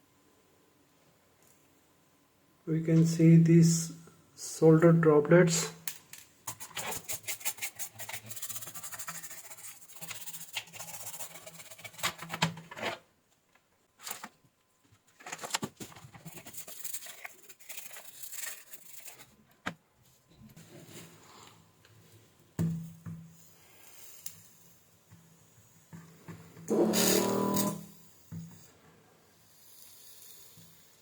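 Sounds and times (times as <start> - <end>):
rubbing and scraping on circuit board: 6.5 - 13.0, 15.2 - 19.4, 26.7 - 27.8.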